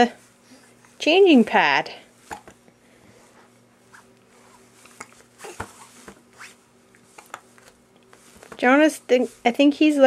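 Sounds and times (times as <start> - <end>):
baby kicking on changing pad: 5.4 - 6.2.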